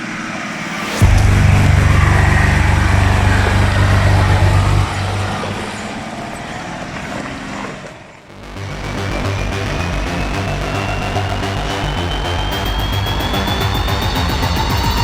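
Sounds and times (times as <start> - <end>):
vehicle engine running: 1.0 - 6.0, 8.3 - 15.0.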